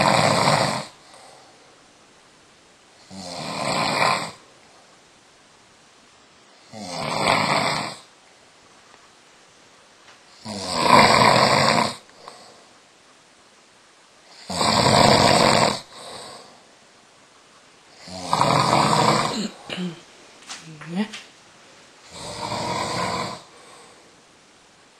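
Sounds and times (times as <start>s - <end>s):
man snoring: 0.0s - 1.4s, 3.0s - 4.4s, 6.6s - 8.1s, 10.4s - 12.6s, 14.3s - 16.6s, 17.9s - 20.0s, 22.0s - 24.0s
faint breath: 1.0s - 1.8s, 23.4s - 24.2s.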